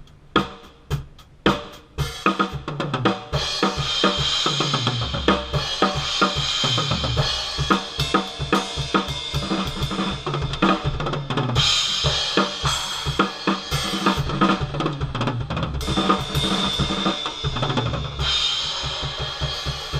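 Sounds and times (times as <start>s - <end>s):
drum kit groove: 0.0s - 19.9s.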